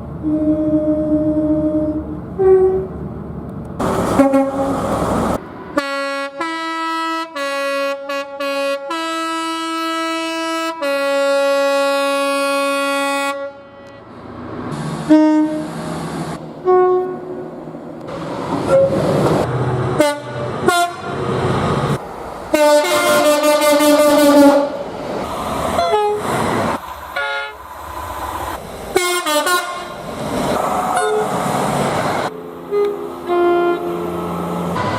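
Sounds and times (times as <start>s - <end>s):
train rumble: 0.0s - 6.5s, 13.5s - 34.9s
train horn blasts: 0.2s - 2.9s, 4.1s - 4.8s, 5.8s - 14.0s, 15.0s - 15.8s, 16.6s - 17.4s, 20.0s - 21.2s, 22.5s - 24.8s, 25.8s - 26.2s, 29.0s - 30.0s, 32.7s - 34.1s.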